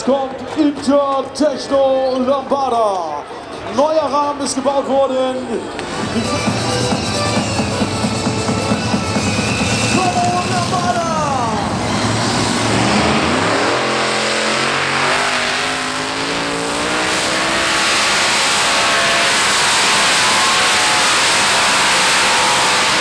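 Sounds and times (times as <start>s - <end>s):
tractor engine revving: 5.8s - 23.0s.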